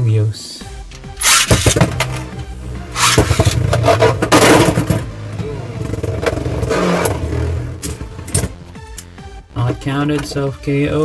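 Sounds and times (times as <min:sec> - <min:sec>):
background music: 0:00.0 - 0:11.0
spinning tops clashing and scraping: 0:00.9 - 0:05.2.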